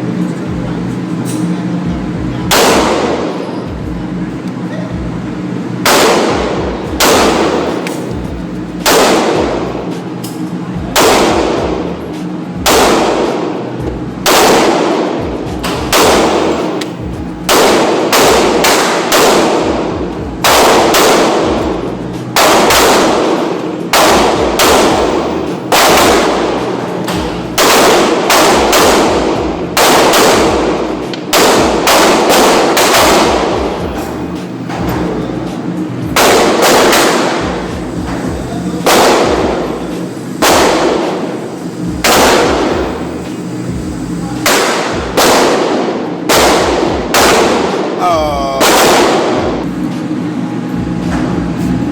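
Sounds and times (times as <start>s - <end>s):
gunshots: 2.5s - 3.4s, 5.8s - 10.0s, 10.9s - 13.6s, 14.2s - 21.8s, 22.4s - 33.8s, 36.0s - 43.4s, 44.4s - 49.7s.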